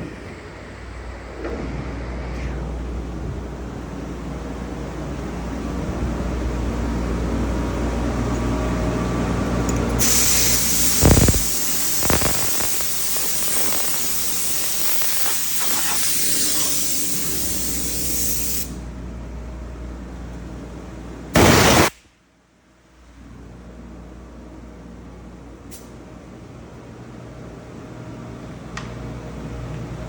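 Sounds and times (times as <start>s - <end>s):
steady low hum: 0.0s - 15.9s
loud spraying hiss: 10.0s - 18.7s.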